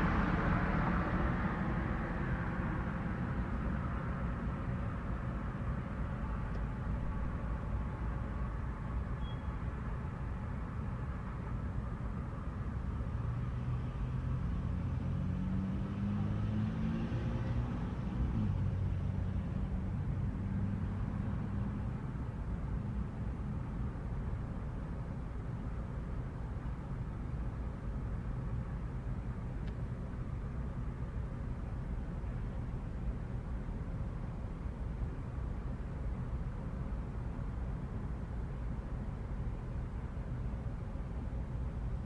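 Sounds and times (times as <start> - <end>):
passing vehicle engine: 0.0 - 8.3, 12.8 - 22.2
distant road traffic rumble: 0.0 - 42.0.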